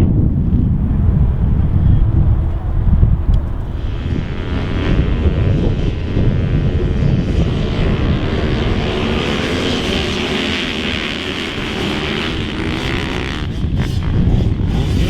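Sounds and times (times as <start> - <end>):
heavy low rumble: 0.0 - 8.9
motorcycle engines running: 0.0 - 15.0.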